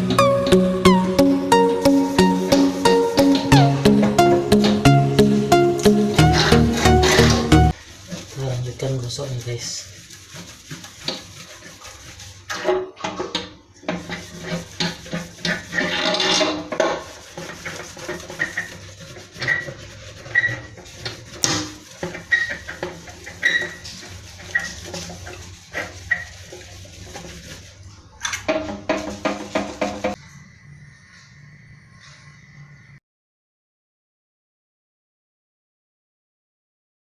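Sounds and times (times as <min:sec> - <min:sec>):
rubbing and scraping metal tank: 0:00.0 - 0:30.2
short squeaks: 0:23.3 - 0:23.9.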